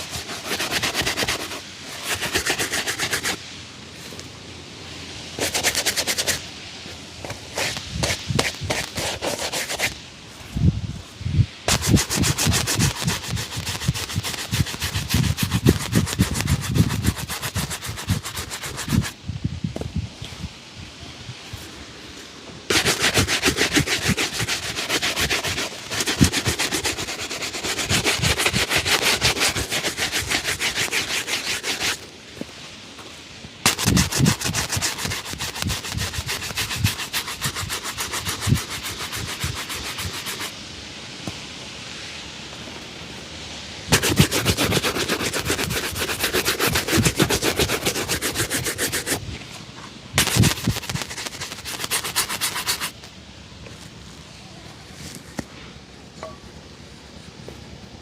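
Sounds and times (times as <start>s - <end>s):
brush rubbing leather shoe: 0.0s - 3.4s, 5.4s - 6.4s, 7.2s - 10.0s, 11.7s - 19.2s, 22.7s - 32.0s, 33.6s - 40.5s, 43.9s - 49.2s, 50.2s - 53.0s.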